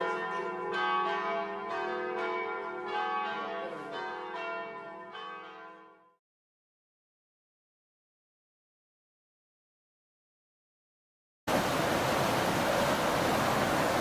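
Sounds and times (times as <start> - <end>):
bells ringing: 0.0 - 6.2.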